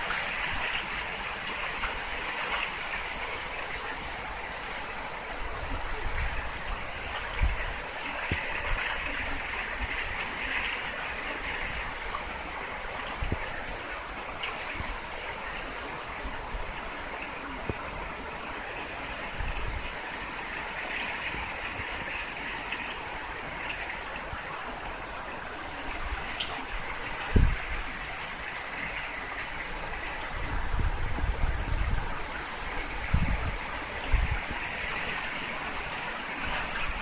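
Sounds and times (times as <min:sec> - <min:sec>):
wind and rain rushing: 0:00.0 - 0:37.0
wind thumps on microphone: 0:27.2 - 0:28.0, 0:30.3 - 0:34.6.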